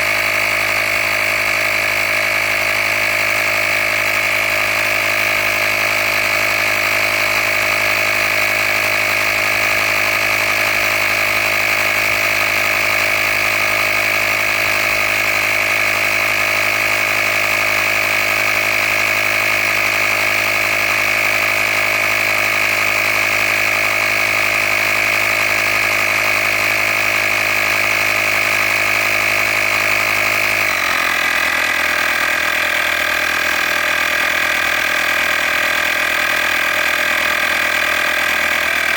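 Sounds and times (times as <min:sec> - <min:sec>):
air compressor running: 0:00.0 - 0:38.9.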